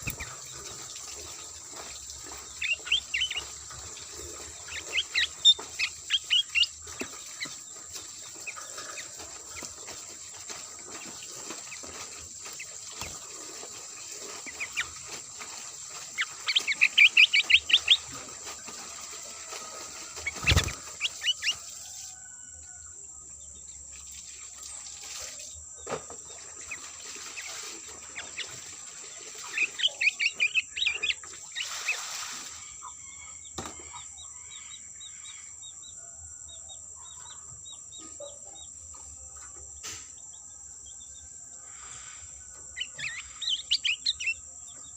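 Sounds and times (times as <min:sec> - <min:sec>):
bulbul chirping: 0:42.8 - 0:44.4.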